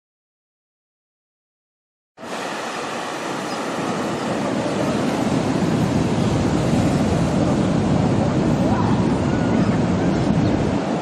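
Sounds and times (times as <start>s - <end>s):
ocean surf washing onto beach: 2.2s - 11.0s.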